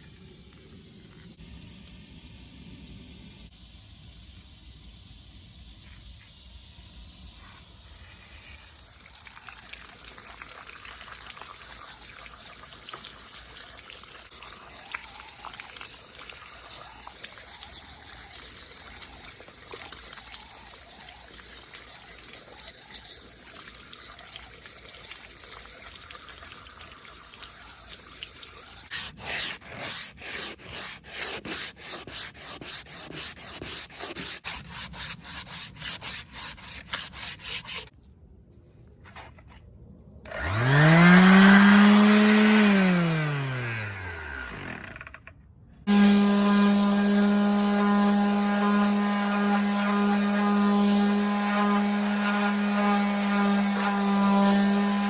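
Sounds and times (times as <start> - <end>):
rhythmic rubbing strokes: 28.7 - 37.9.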